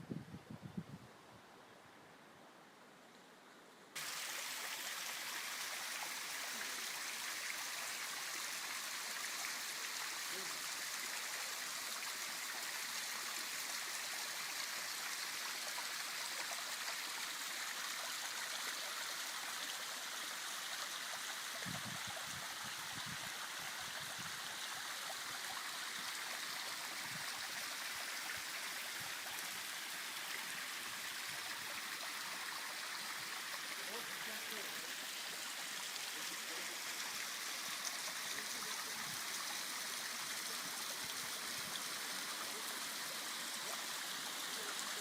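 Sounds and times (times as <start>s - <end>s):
stream water flowing: 4.0s - 45.0s.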